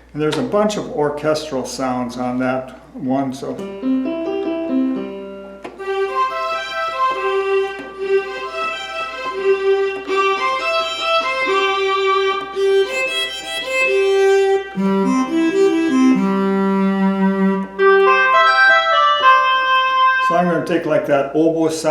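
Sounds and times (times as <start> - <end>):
accordion playing string voice melody: 3.6 - 21.0.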